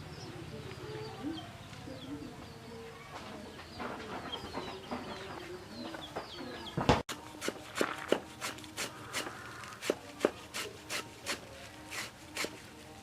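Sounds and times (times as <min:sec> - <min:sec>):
chickens clucking: 0:00.0 - 0:07.0
chicks peeping: 0:00.0 - 0:07.0.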